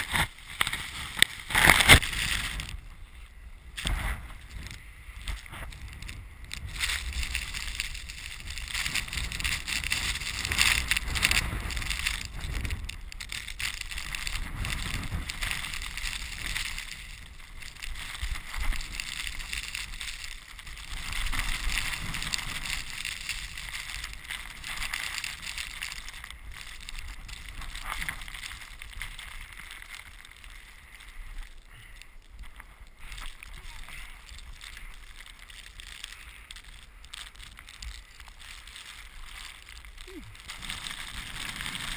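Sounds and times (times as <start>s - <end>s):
wind on microphone: 0.0s - 29.3s
snowboard hissing through powder: 0.0s - 41.9s.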